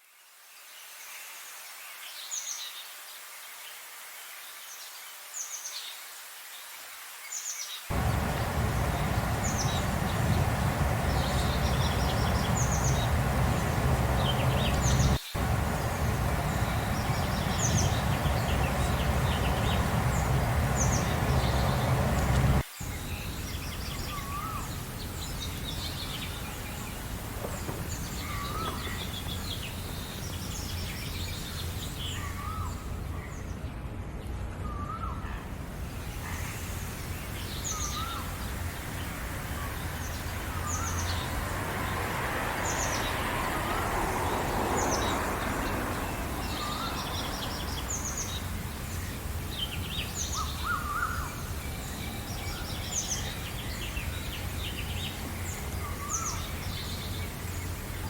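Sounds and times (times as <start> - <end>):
steady background hiss: 0.0 - 34.6, 35.2 - 58.0
birds chirping and singing: 7.9 - 23.0.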